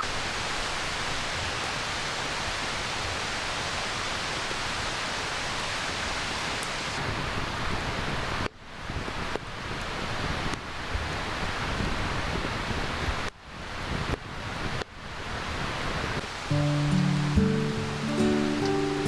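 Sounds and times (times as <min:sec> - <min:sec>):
steady rain: 0:00.0 - 0:09.0, 0:15.2 - 0:19.0.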